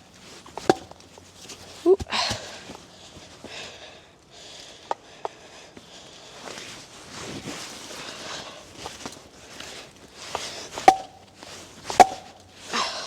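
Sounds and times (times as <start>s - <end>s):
rustling and shuffling: 0.0s - 3.7s, 5.8s - 12.8s
hatchet strikes: 0.6s - 0.9s, 10.9s - 11.2s, 12.0s - 12.3s.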